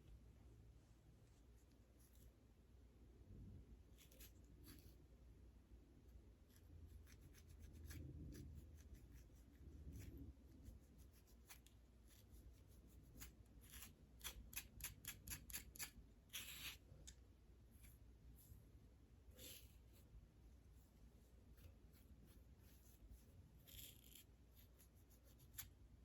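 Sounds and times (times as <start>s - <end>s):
scratching scalp: 6.4s - 18.6s, 19.3s - 25.8s.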